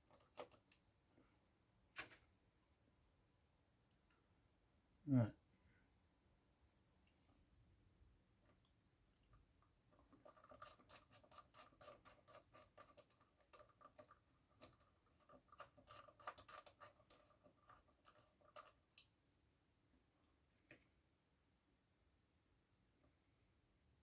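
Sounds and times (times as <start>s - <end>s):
small parts clicking and tapping: 0.0s - 0.9s, 9.2s - 19.1s.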